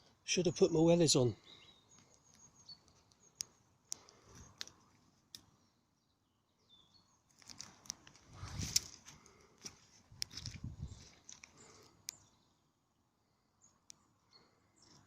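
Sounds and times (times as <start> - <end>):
footsteps on wet path: 7.5 - 11.5.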